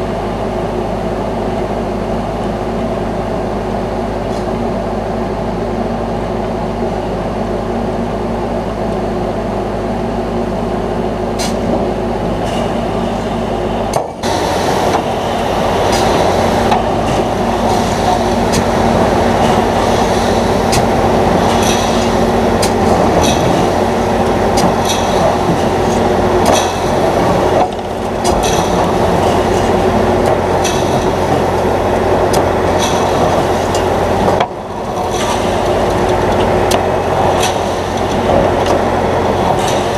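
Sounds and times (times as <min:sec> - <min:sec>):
combine harvester running: 0:00.0 - 0:39.9
rattles and clicks: 0:14.9 - 0:39.9.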